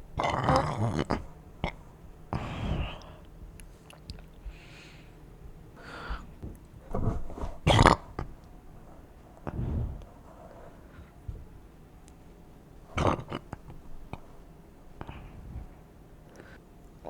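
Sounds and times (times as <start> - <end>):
person burping into plush toy: 0.1 - 1.8, 13.0 - 14.3.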